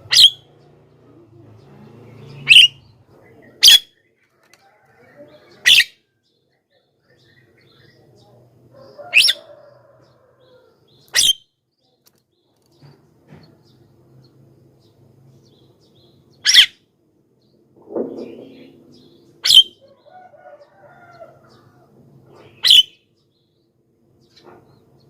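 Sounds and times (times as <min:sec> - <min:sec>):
bird giving harsh calls: 0:00.0 - 0:00.5, 0:02.2 - 0:04.0, 0:09.1 - 0:09.4, 0:11.1 - 0:11.4, 0:16.4 - 0:16.8, 0:18.1 - 0:19.8, 0:22.4 - 0:23.0.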